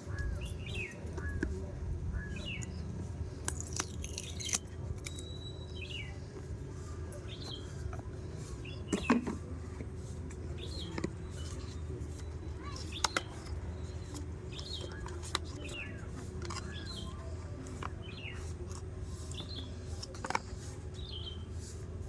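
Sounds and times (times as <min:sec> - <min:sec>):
birds chirping: 0:00.0 - 0:22.0
low background rumble: 0:00.0 - 0:22.0.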